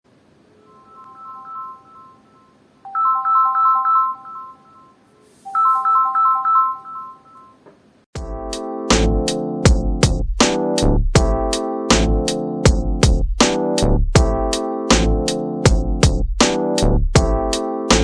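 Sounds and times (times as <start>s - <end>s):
three-note chiming ringtone: 0.5s - 7.6s
electronic music with a beat: 8.2s - 18.0s.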